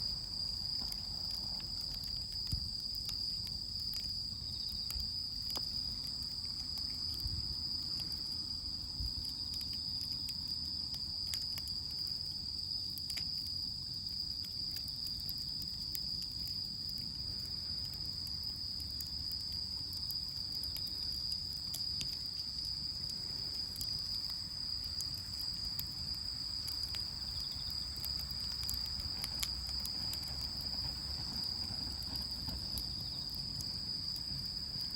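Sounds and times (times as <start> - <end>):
wood bonfire crackling: 0.0 - 34.9
insects singing: 17.6 - 34.9.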